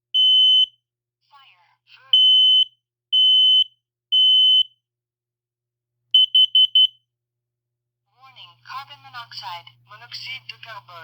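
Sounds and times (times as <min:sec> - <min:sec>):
smoke alarm beeps: 0:00.1 - 0:00.8, 0:02.2 - 0:04.8, 0:06.2 - 0:07.0.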